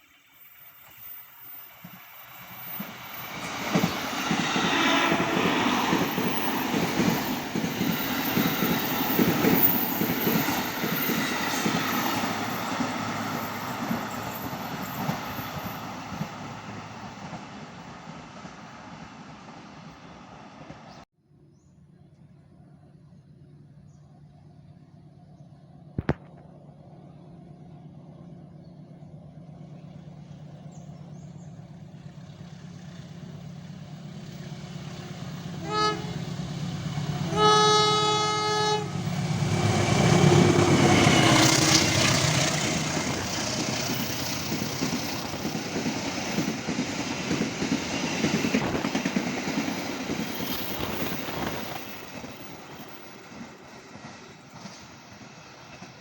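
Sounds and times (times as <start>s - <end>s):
train rumble: 0.0s - 21.0s, 22.2s - 56.0s
train horn: 4.3s - 6.2s, 35.5s - 42.6s.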